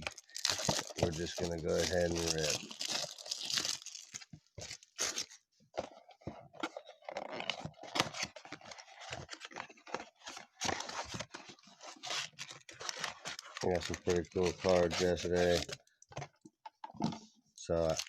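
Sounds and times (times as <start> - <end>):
packaging tearing and crinkling: 0.0 - 5.4, 6.9 - 15.8.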